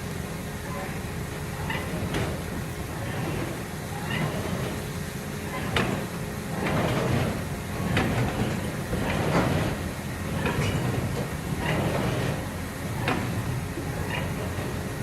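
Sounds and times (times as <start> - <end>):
structure creaking and knocking: 1.6 - 15.0.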